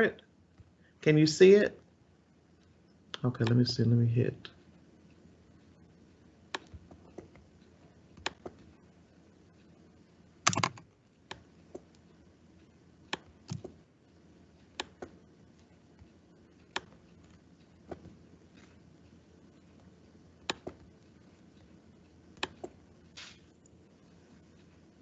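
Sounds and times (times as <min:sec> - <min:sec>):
computer key taps and clicks: 0:10.5 - 0:11.9, 0:13.1 - 0:13.8, 0:20.4 - 0:20.8, 0:22.4 - 0:22.8.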